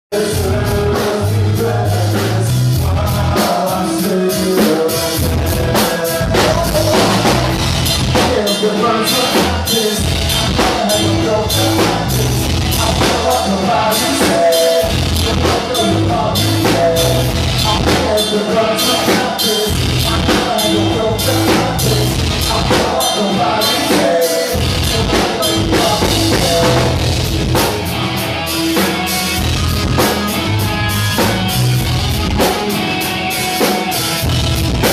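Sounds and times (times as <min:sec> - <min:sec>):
drum kit beat: 0:00.1 - 0:34.9
punk rock band playing live: 0:00.1 - 0:34.9.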